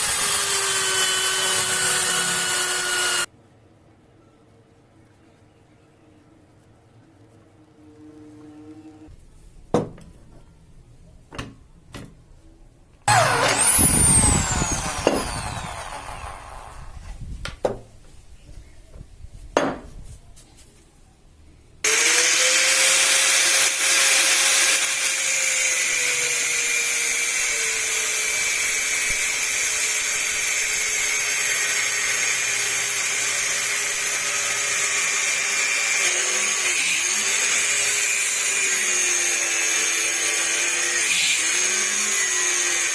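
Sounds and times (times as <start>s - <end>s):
power tool whining on steel: 0.0s - 3.3s, 13.1s - 17.1s, 21.9s - 42.9s.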